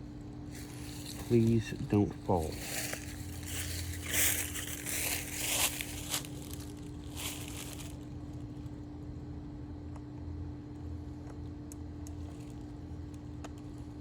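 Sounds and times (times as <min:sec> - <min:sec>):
faint steady hum: 0:00.0 - 0:14.0
footsteps crunching through undergrowth: 0:00.4 - 0:08.2.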